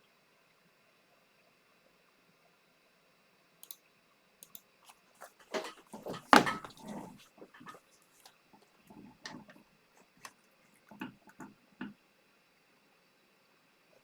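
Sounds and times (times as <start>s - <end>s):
knocks and rustling: 5.2s - 7.7s.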